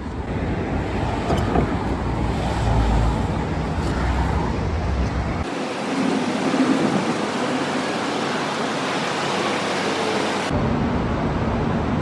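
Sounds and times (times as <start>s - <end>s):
low rumble of road traffic: 0.0s - 9.0s.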